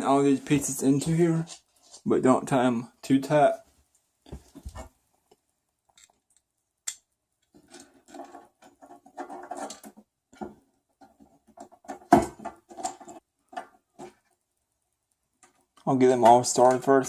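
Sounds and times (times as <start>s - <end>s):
screws and plastic parts rattling: 7.4s - 14.2s.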